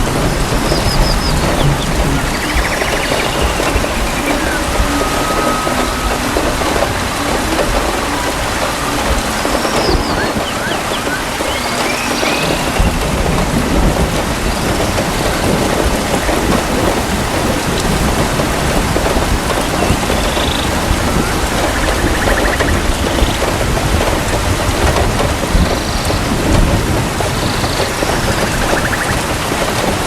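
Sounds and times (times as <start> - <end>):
low rumble of thunder: 0.0 - 30.0
steady rain falling: 0.0 - 30.0.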